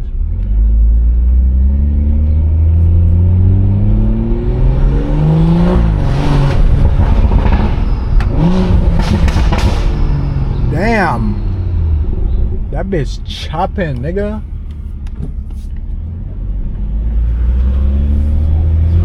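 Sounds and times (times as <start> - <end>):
car engine accelerating hard: 0.0 - 19.0
exhaust crackles and pops: 6.5 - 10.1.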